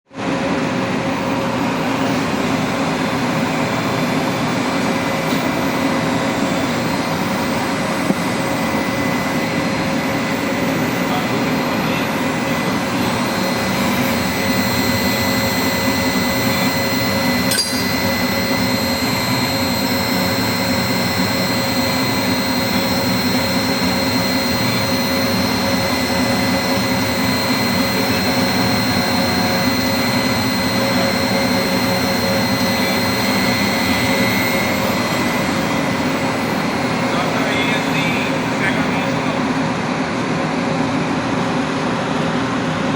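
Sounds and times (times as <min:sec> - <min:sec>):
router machinery with high whine: 0:00.2 - 0:42.9
sharp click: 0:17.5 - 0:17.9.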